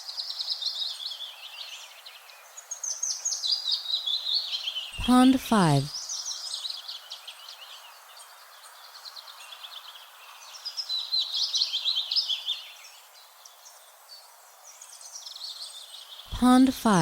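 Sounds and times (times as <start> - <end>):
light breeze hiss: 6.0 - 16.2.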